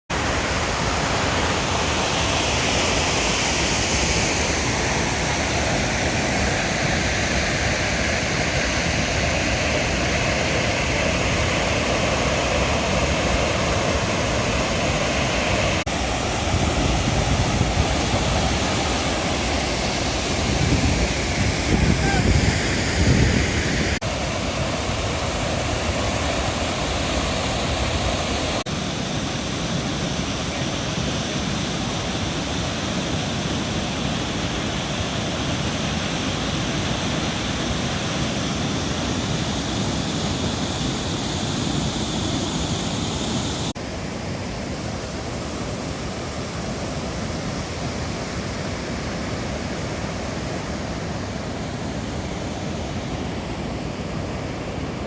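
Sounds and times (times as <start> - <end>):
waterfall rushing: 0.1 - 43.8.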